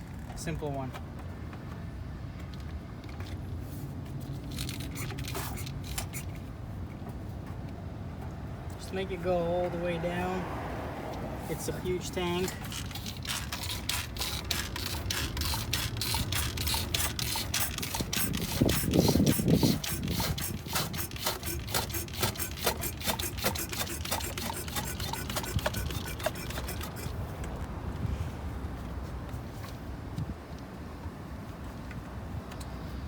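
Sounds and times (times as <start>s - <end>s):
hand pump rasping strokes: 4.4s - 6.4s, 11.6s - 27.2s.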